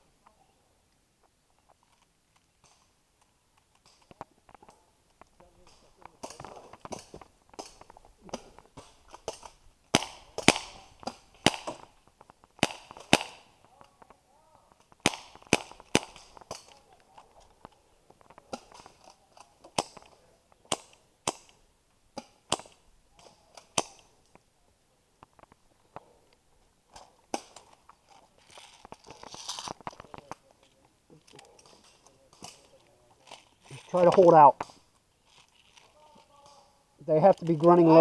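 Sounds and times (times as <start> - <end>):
airsoft guns firing: 6.2 - 12.0, 12.6 - 13.6, 15.0 - 16.7.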